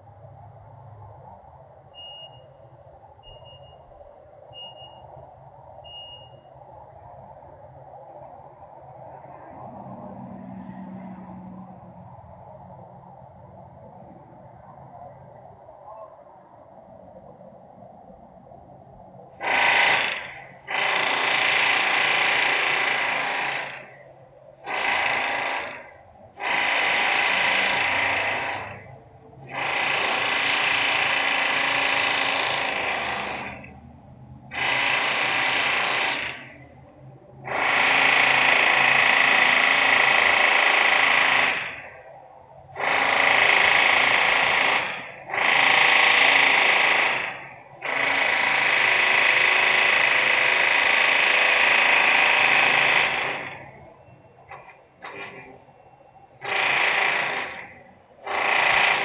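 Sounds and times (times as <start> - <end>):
power tool machine running: 19.4 - 42.0, 42.8 - 53.9, 54.5 - 55.6, 56.4 - 59.0.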